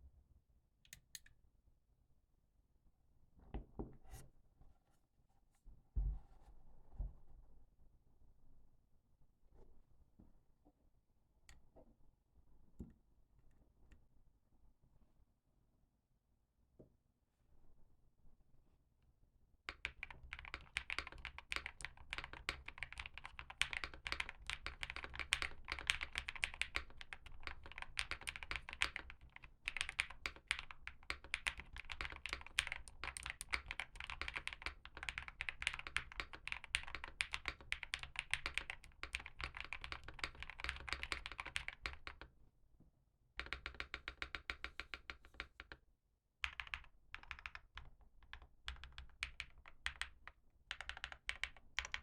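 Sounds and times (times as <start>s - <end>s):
mechanical keyboard typing: 19.7s - 42.3s, 43.4s - 45.8s, 46.4s - 52.0s.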